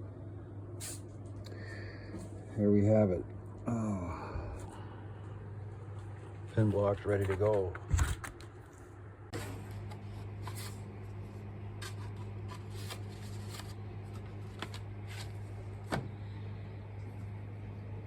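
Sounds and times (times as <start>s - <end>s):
steady low hum: 0.0s - 18.0s
rustles of things handled: 5.7s - 16.2s.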